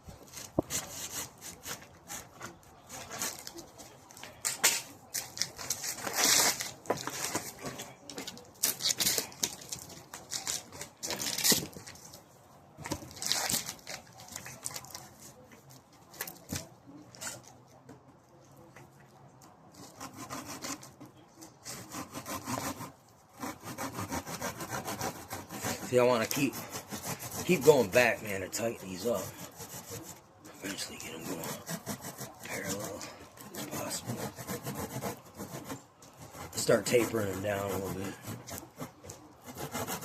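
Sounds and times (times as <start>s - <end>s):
bark scraping and crackling: 0.1s - 40.0s
bark rasping tear: 21.6s - 40.0s.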